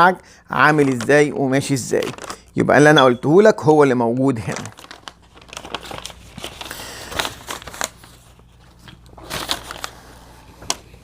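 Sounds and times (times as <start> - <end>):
paper rustling and crinkling: 1.9 - 2.4, 4.1 - 11.0.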